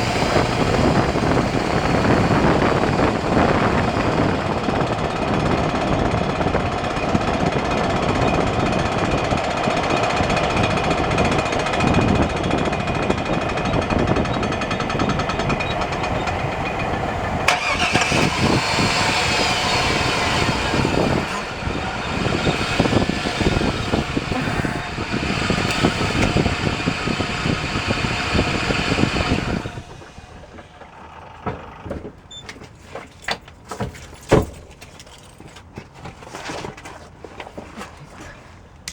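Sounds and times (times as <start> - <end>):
drivetrain noise: 0.0 - 33.3
road and wind noise: 0.0 - 38.9.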